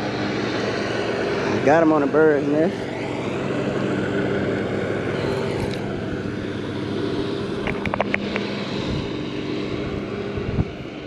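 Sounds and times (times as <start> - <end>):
engine drone: 0.0 - 11.0.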